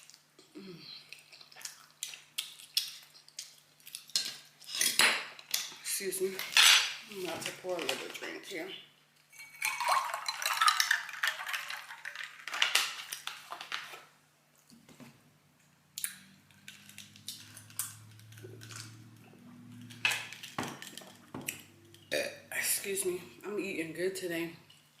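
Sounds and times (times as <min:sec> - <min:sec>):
dishes clinking: 0:06.5 - 0:07.0, 0:09.3 - 0:11.2
drink pouring into a cup: 0:09.4 - 0:13.2.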